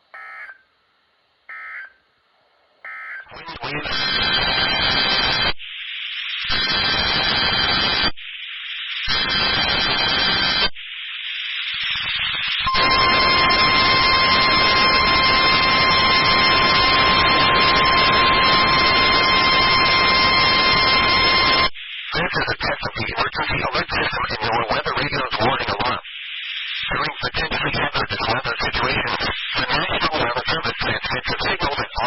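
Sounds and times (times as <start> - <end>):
steady single-pitch alarm tone: 0.0 - 0.7, 1.5 - 2.0, 2.8 - 3.3, 4.0 - 22.2
radio static hiss: 1.4 - 32.0
buzzy digital header bursts: 2.9 - 32.0.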